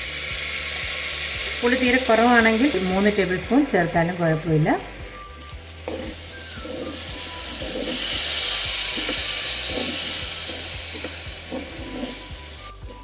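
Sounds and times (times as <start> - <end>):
food sizzling in a pan: 0.0 - 13.0
spoon scraping and knocking: 5.8 - 13.0.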